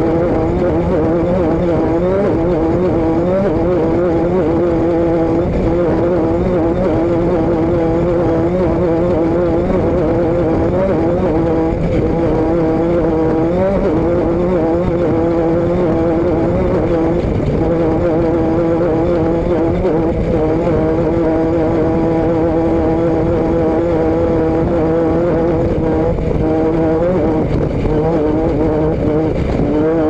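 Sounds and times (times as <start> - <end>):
low rush of noise: 0.0 - 30.0
vehicle engine running: 0.0 - 30.0.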